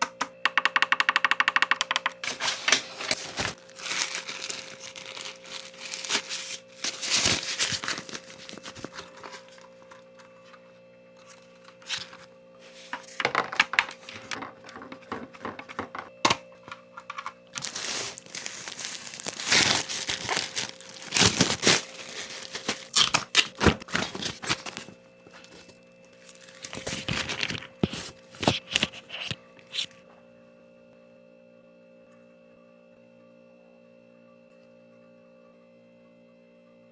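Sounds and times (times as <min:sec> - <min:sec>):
packaging tearing and crinkling: 0:02.2 - 0:10.0, 0:11.2 - 0:13.2, 0:17.1 - 0:29.9.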